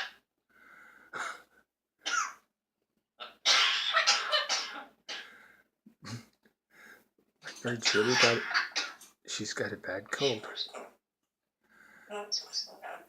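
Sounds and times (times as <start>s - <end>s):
bird coughing: 2.0s - 2.4s, 3.2s - 5.4s, 7.6s - 9.0s.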